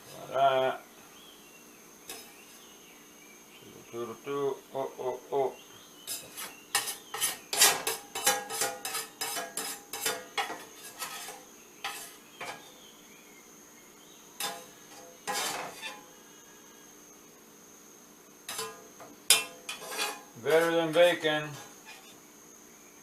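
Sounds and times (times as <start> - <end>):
metal utensil clattering on cookware: 2.1 - 2.3, 6.1 - 12.7, 14.4 - 16.0, 18.5 - 22.2.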